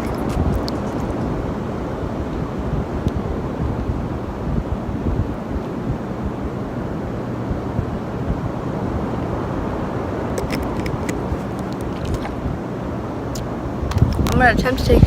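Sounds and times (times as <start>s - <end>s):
wind rumbling on microphone: 0.0s - 15.0s
small sharp clicks: 10.4s - 12.4s.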